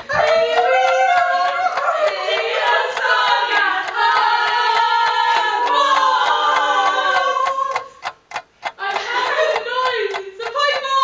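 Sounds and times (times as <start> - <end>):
steady clicking: 0.0 - 11.0
voices singing together: 0.0 - 11.0.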